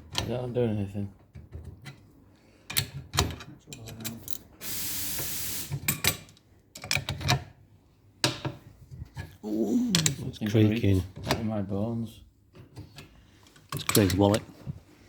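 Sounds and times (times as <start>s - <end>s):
steady hiss: 4.6s - 5.8s.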